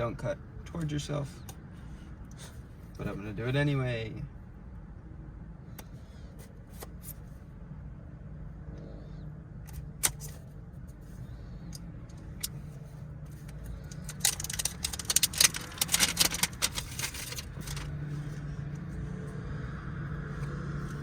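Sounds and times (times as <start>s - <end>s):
low hum: 4.2s - 21.0s
packaging crinkling and rattling: 13.3s - 18.1s.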